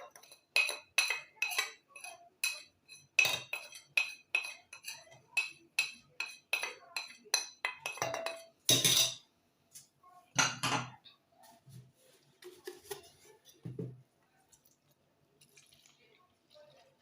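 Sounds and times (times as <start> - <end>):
spoon clinking and scraping bowl: 0.0 - 9.2, 12.4 - 13.8.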